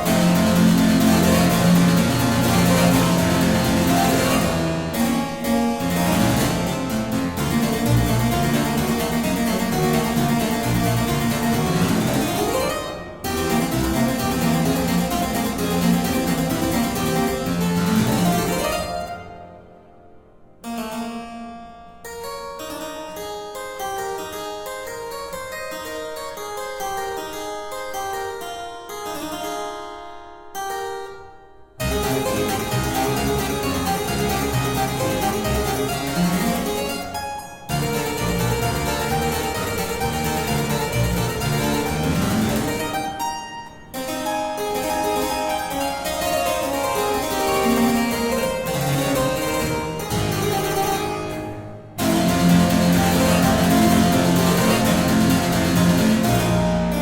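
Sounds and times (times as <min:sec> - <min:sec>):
harpsichord music: 0:00.0 - 0:57.0.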